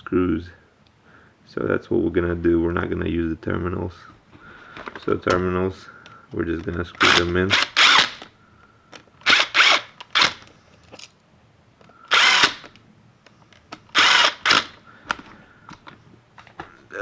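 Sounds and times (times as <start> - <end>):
cordless drill driving screws: 6.6 - 8.3, 9.0 - 11.1, 12.0 - 12.8, 13.5 - 15.3.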